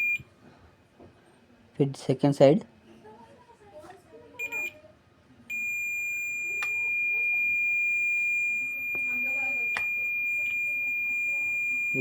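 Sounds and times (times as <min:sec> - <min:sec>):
multimeter beeping: 0:00.0 - 0:00.3, 0:04.4 - 0:04.8, 0:05.5 - 0:12.0.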